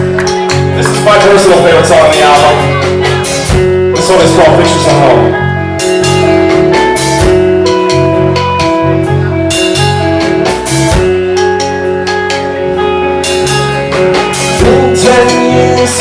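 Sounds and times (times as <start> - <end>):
electric guitar notes: 0.0 - 16.0.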